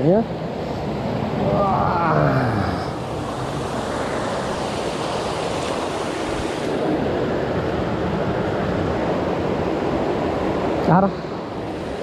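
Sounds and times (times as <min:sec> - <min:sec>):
waterfall rushing: 0:01.2 - 0:08.3.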